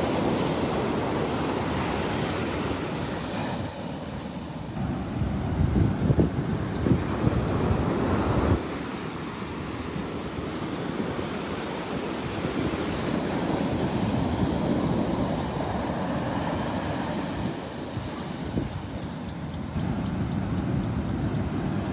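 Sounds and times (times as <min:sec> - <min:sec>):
sea waves washing onto beach: 0:00.0 - 0:21.9
wind buffeting microphone: 0:00.0 - 0:21.9.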